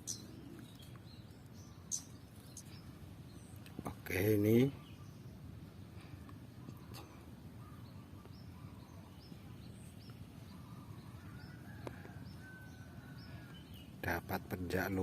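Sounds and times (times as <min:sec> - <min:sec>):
high bird chirps: 0:00.0 - 0:03.6
low rumbling background noise: 0:00.0 - 0:15.0.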